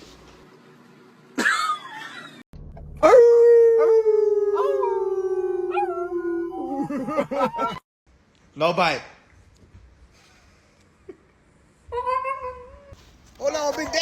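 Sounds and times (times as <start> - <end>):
dog howling: 3.0 - 7.8.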